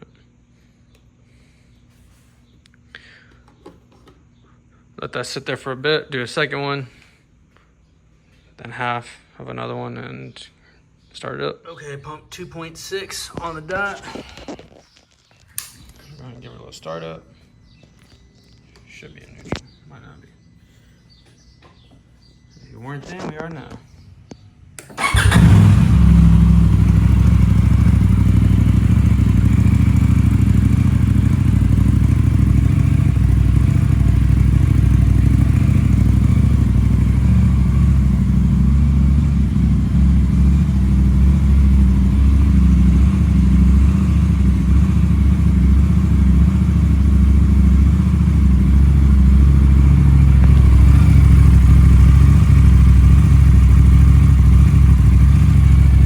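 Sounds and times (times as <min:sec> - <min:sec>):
motorcycle engine idling: 0:25.0 - 0:56.0.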